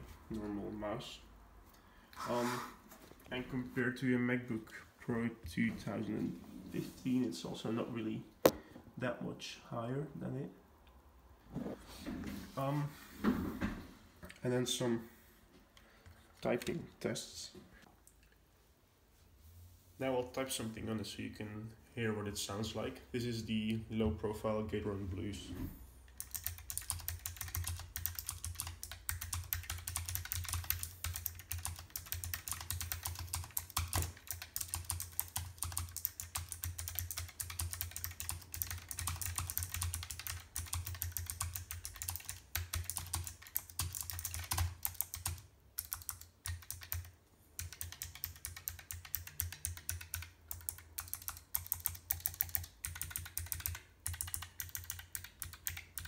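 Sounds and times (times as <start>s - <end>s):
mechanical keyboard typing: 26.1s - 56.0s.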